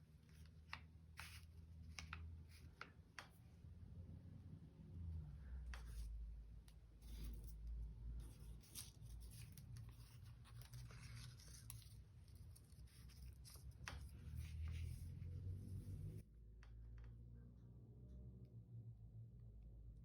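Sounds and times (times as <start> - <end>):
paper scratches and rustles: 0.2 - 2.9, 7.0 - 16.2.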